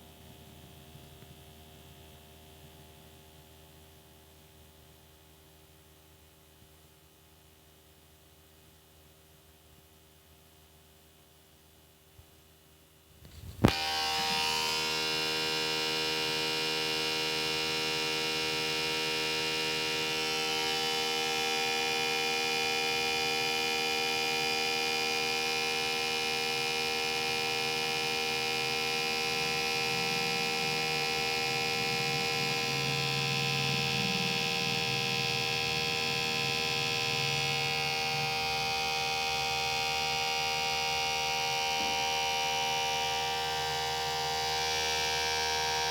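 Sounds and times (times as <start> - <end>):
disc drive whirring: 13.2 - 22.0, 27.1 - 45.9.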